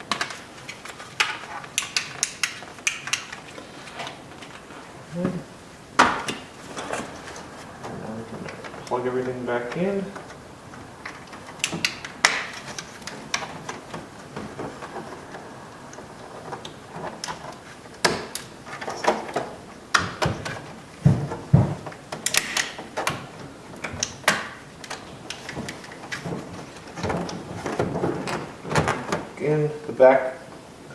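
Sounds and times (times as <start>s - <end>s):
sharp plastic snaps: 0.0s - 4.2s, 11.1s - 14.1s, 22.1s - 26.3s
plastic connectors clicking: 0.1s - 4.2s.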